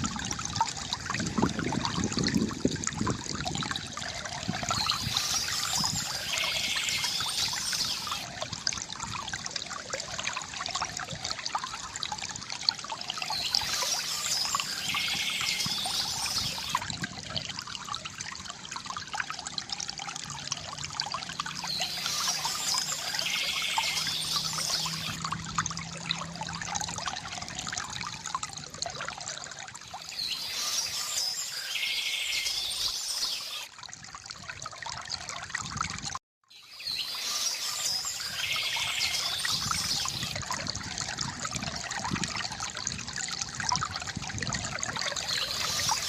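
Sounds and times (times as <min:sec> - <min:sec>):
stream water trickling: 0:00.0 - 0:46.0
small bird singing: 0:04.7 - 0:08.2, 0:13.3 - 0:16.8, 0:21.7 - 0:25.2, 0:30.1 - 0:33.7, 0:36.6 - 0:40.3.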